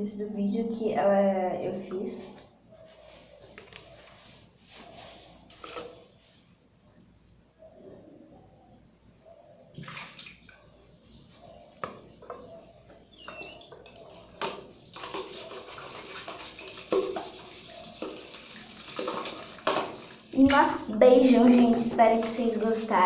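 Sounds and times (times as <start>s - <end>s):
water running and splashing: 13.2s - 20.7s.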